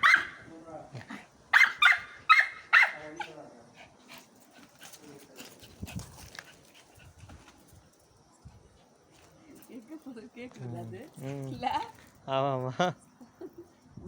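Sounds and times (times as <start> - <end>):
dog barking: 0.0 - 0.4, 1.5 - 3.3.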